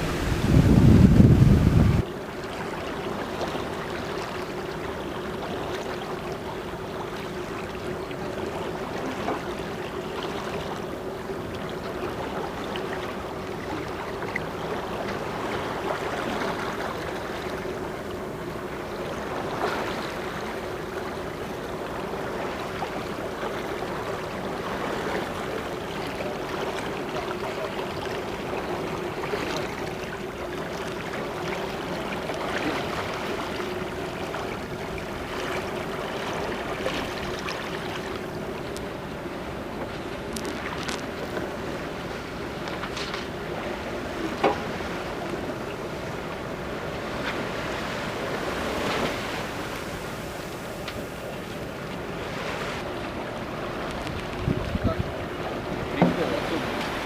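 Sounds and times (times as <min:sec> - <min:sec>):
water splashing along hull: 0:00.0 - 0:57.0.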